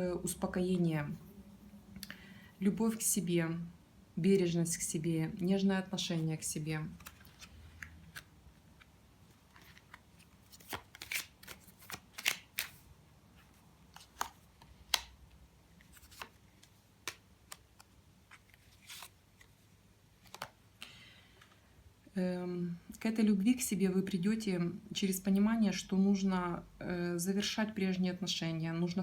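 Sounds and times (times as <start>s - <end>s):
cards sliding rustle: 7.0s - 15.2s, 15.8s - 19.6s, 20.2s - 20.6s
cards snapping and flicking: 10.6s - 12.8s, 14.0s - 15.2s, 17.0s - 17.9s, 20.2s - 20.6s.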